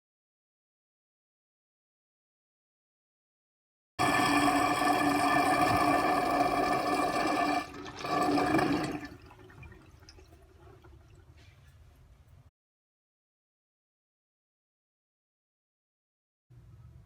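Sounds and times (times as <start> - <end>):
drain emptying with tonal noise: 4.0 - 11.5.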